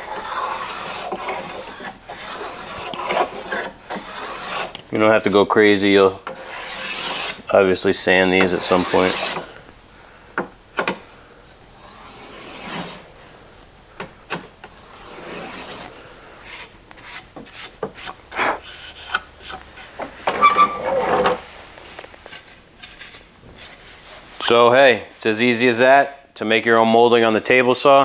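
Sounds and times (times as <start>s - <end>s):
block plane rasping on wood: 0.0s - 4.8s, 6.3s - 7.5s, 8.4s - 9.5s, 14.8s - 15.9s
sharp clicks and knocks: 10.4s - 11.0s.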